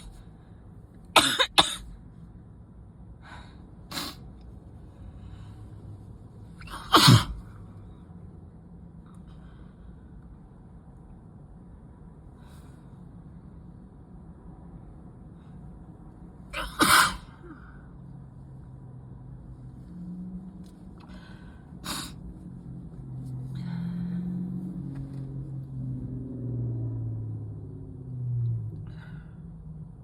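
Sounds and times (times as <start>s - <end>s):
person sneezing: 1.2s - 1.8s, 6.6s - 7.4s, 16.6s - 17.7s.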